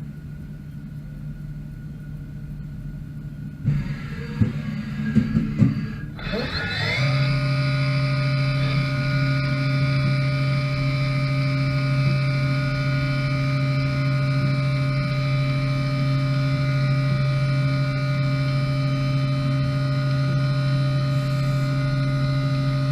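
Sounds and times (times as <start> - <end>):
mill spindle whine: 0.0 - 22.9.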